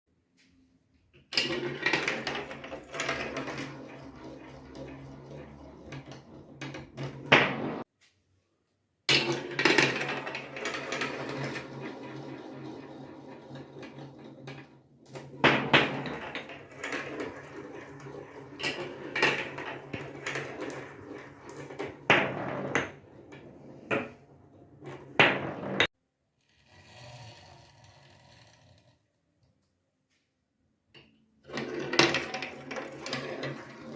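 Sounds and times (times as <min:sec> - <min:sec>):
marbles clacking against track: 0:01.4 - 0:07.7, 0:09.1 - 0:24.1, 0:31.5 - 0:33.9
marbles rolling down plastic track: 0:01.4 - 0:07.8, 0:09.1 - 0:25.9, 0:31.4 - 0:33.9.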